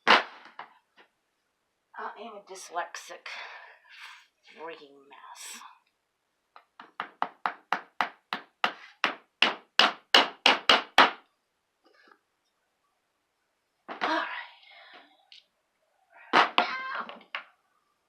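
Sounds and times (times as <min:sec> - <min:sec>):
hammer tapping nails: 0:06.6 - 0:11.3.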